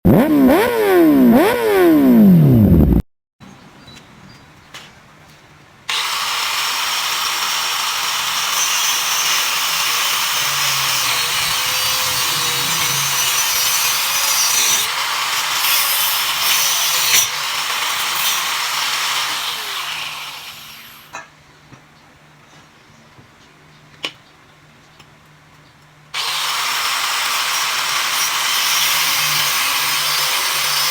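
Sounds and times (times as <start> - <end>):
power tool rasping: 5.9 - 21.0, 26.2 - 30.9.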